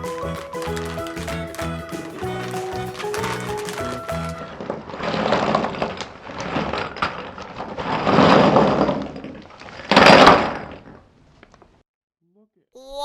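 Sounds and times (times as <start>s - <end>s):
plastic toys rattling: 0.0s - 8.8s.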